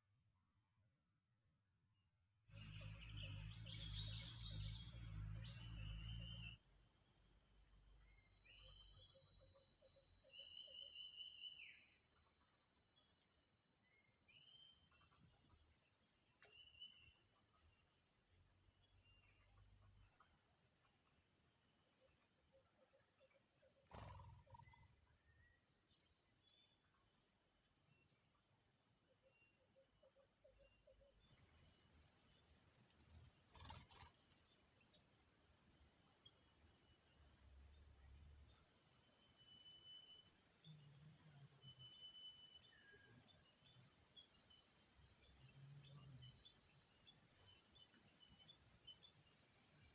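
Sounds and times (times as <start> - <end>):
high-pitched insect drone: 24.0 - 25.0
shrill bird call: 24.0 - 25.0.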